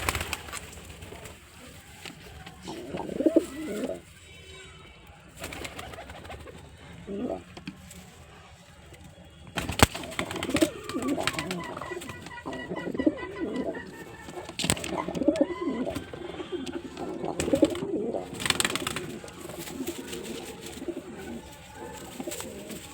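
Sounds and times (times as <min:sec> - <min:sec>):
pigeon cooing: 0:01.0 - 0:04.0, 0:05.8 - 0:07.6, 0:09.9 - 0:22.9.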